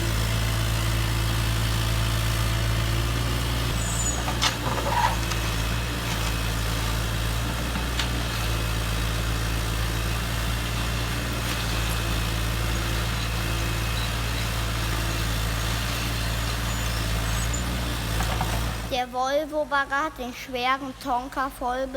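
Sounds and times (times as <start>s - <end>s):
model vehicle engine idling: 0.0s - 18.9s.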